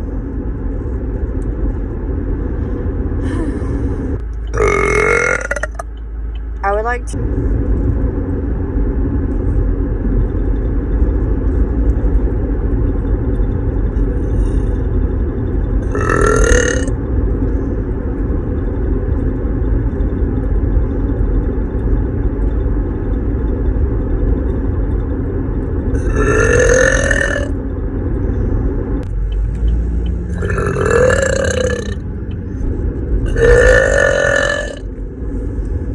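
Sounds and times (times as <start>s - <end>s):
low rumble: 0.0s - 35.9s
woman burping loudly: 4.6s - 5.8s, 15.9s - 16.9s, 26.0s - 27.5s, 30.4s - 32.0s, 33.3s - 34.8s.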